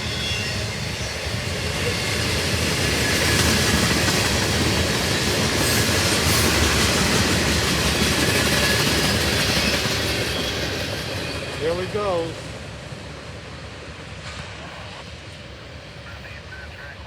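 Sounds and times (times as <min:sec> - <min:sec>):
freight train wheels clattering: 0:00.0 - 0:12.6.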